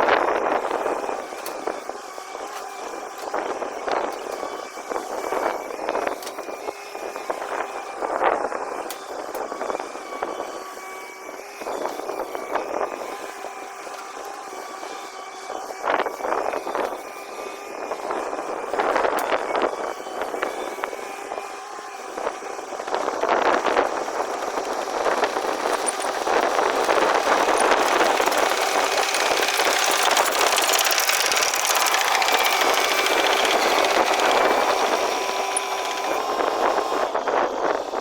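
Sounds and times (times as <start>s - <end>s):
excavator engine running: 18.3s - 38.0s.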